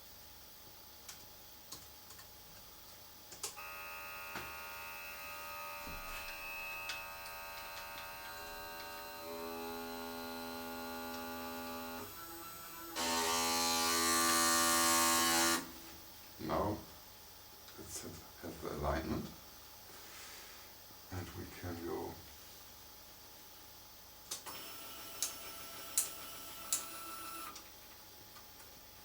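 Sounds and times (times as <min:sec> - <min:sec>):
stepper motor whining: 0:03.6 - 0:15.7.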